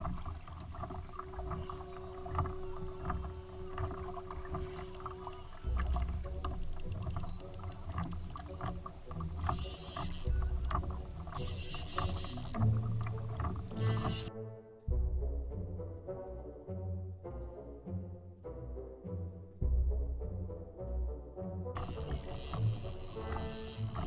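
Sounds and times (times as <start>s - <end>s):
knocks and clicks: 0.0s - 14.3s, 21.8s - 24.0s
water moving against a hull: 0.0s - 14.3s, 21.8s - 24.0s.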